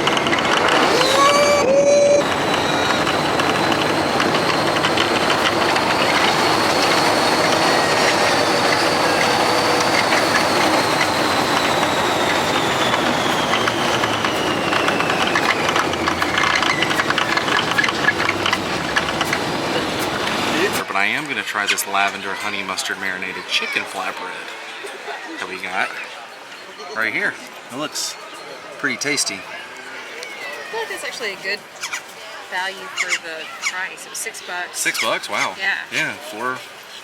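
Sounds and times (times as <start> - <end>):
vehicle engine rumbling: 0.0 - 21.0
high electric whine: 0.1 - 20.7.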